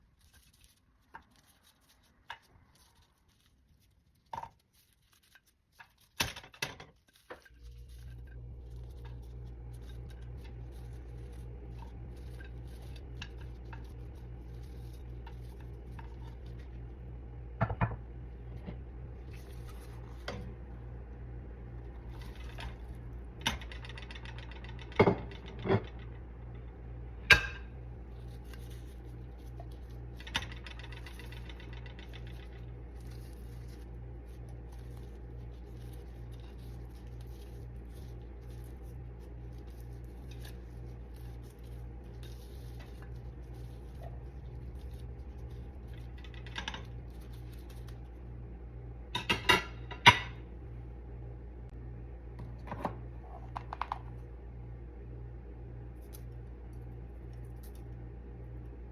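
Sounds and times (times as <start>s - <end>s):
steady low hum: 0.0s - 58.9s
cookware and utensils clinking: 49.2s - 50.4s.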